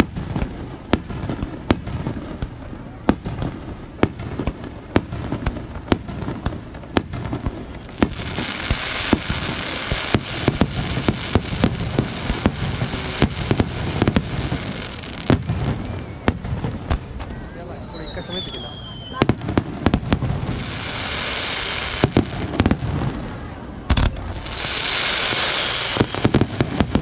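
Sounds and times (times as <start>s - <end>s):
fireworks bangs: 0.0s - 27.0s
fireworks crackling: 0.0s - 27.0s.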